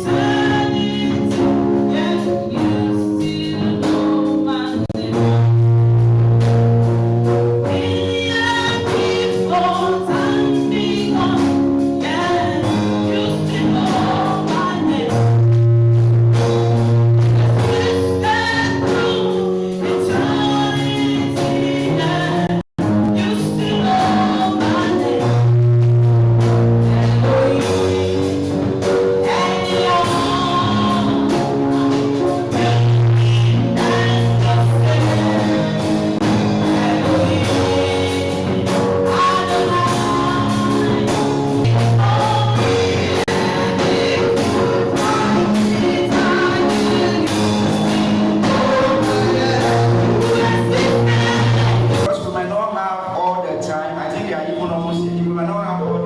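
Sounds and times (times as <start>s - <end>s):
held instrumental notes: 0.0s - 56.0s
voices singing gospel: 0.0s - 56.0s.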